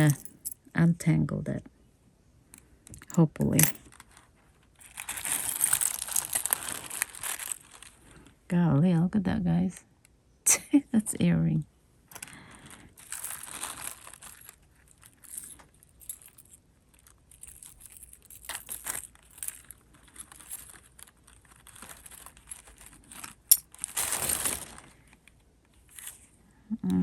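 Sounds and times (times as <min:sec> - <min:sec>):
jewelry chains clicking and jangling: 0:00.0 - 0:00.6, 0:03.0 - 0:04.1, 0:04.8 - 0:07.8, 0:13.0 - 0:24.6
rustling and crinkling: 0:02.9 - 0:08.4, 0:12.1 - 0:26.4.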